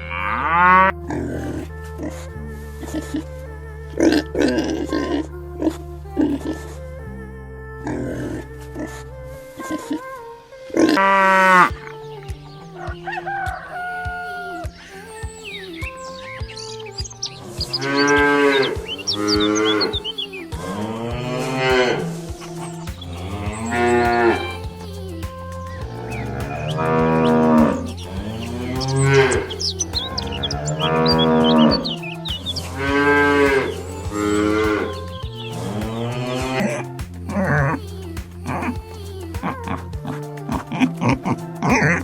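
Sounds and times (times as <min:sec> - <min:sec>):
cows mooing: 0:00.0 - 0:01.6, 0:17.3 - 0:24.6, 0:26.0 - 0:35.0
low musical backing: 0:00.0 - 0:42.0.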